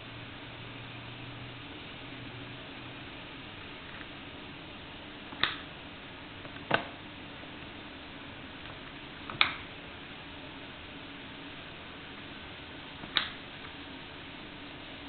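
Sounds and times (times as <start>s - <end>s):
steady low hiss: 0.0s - 15.0s
sharp clicks: 5.3s - 5.7s, 13.0s - 13.4s.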